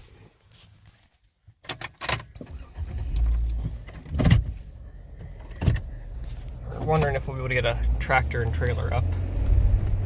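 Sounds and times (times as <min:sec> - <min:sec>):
low engine rumble: 0:02.6 - 0:10.0.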